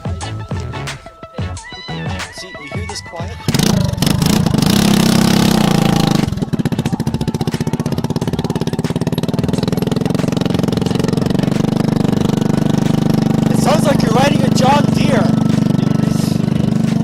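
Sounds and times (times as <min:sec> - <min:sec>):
unmuffled moped engine: 0:03.5 - 0:17.0.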